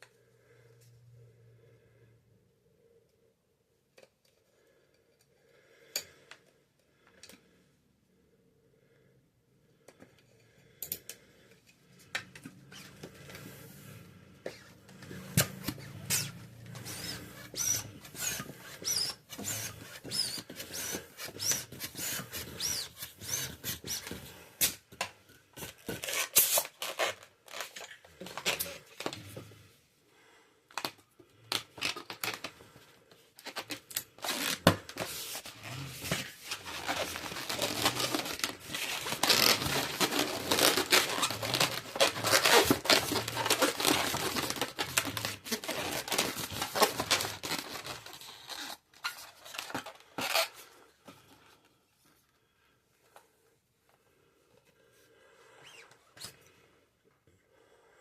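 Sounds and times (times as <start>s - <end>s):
rubber balloon squeaks: 12.6s - 13.2s, 14.5s - 24.4s, 25.7s - 29.1s, 33.4s - 50.8s, 55.6s - 56.2s.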